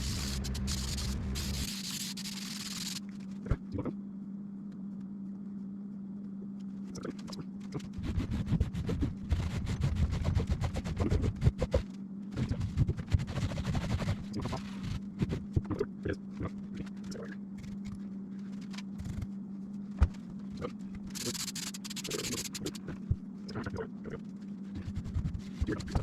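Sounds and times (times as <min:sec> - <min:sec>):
aerosol spray hissing: 0:00.0 - 0:03.0, 0:21.2 - 0:22.8
steady low hum: 0:00.0 - 0:26.0.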